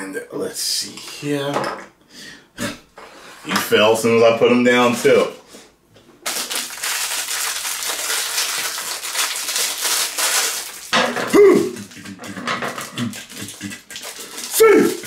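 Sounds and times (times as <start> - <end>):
packaging crinkling: 6.2 - 15.0
yelp-like cry: 11.3 - 11.8.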